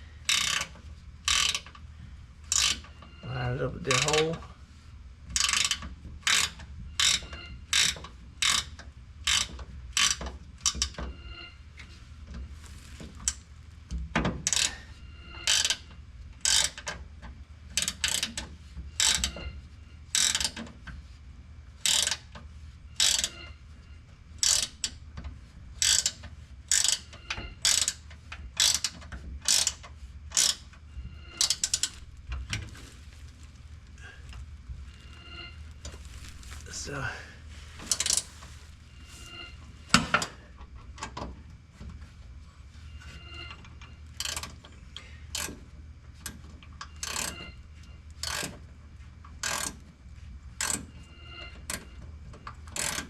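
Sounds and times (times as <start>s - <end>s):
ratchet wrench clicking: 0.3s - 1.8s, 2.5s - 2.9s, 3.9s - 4.4s, 5.4s - 10.9s, 14.4s - 14.8s, 15.4s - 15.8s, 16.4s - 17.0s, 17.8s - 19.5s, 20.1s - 20.6s, 21.8s - 22.3s, 23.0s - 23.4s, 24.4s - 25.0s, 25.8s - 28.0s, 28.6s - 30.7s, 31.4s - 32.0s, 37.9s - 38.2s, 44.2s - 44.7s, 45.3s - 45.6s, 46.2s - 47.5s, 48.2s - 48.6s, 49.4s - 49.8s, 50.6s - 50.9s, 52.5s - 53.0s.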